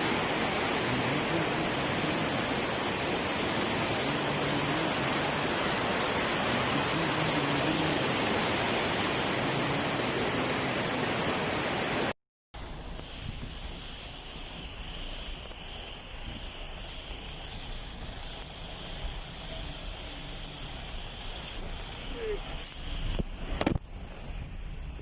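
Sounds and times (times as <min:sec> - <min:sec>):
fast-flowing river water rushing: 0:00.0 - 0:12.1.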